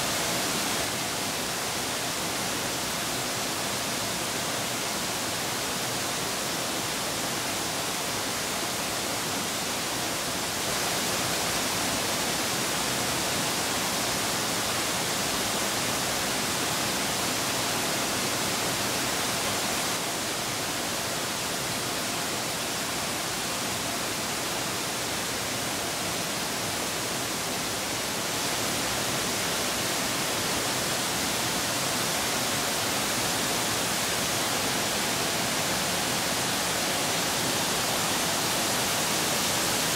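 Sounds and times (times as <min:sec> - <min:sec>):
mountain stream rushing: 0:00.0 - 0:39.9.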